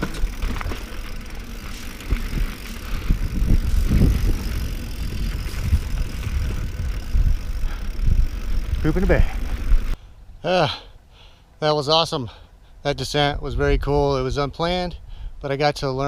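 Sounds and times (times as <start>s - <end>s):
bike rattling over bumps: 0.0s - 10.0s
bike tyres rolling over rock: 0.0s - 10.0s.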